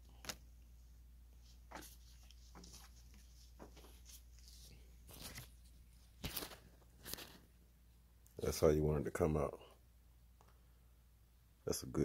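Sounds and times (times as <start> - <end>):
faint clicks and rustles: 1.4 - 7.5.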